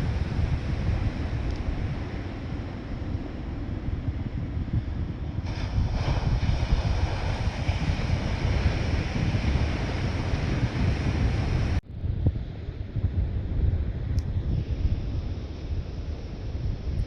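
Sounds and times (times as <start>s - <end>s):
gusty wind buffeting microphone: 0.0s - 17.0s
surf breaking: 5.4s - 11.8s.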